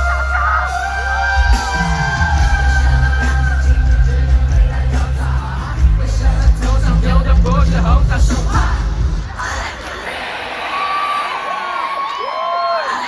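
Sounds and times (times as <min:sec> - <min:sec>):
heavy bass beat: 0:00.0 - 0:09.4
person singing: 0:00.0 - 0:10.3
audience yelling and cheering: 0:00.0 - 0:13.0.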